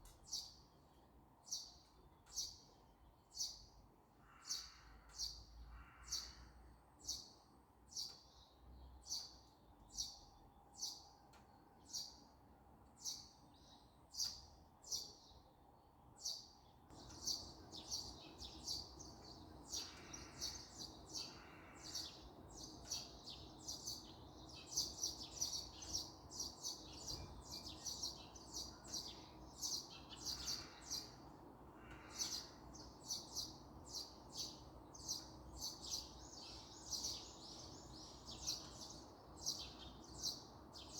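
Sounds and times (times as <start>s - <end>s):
small songbirds chirping: 0.0s - 40.9s.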